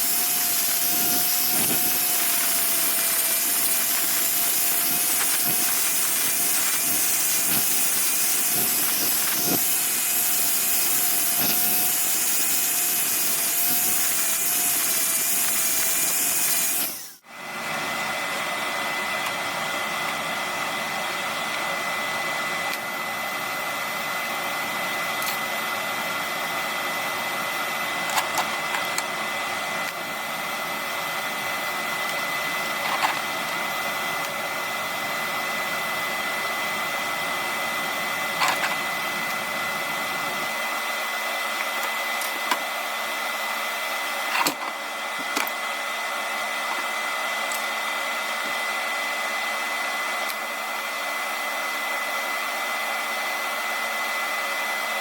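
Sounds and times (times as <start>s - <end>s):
hissing metalworking tool: 0.0s - 17.4s.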